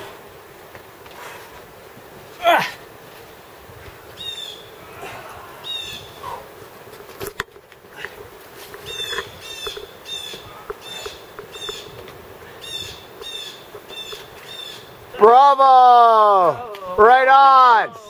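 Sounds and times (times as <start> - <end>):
songbird calling: 4.2 - 4.8, 5.6 - 6.4, 8.8 - 12.0, 12.6 - 15.0.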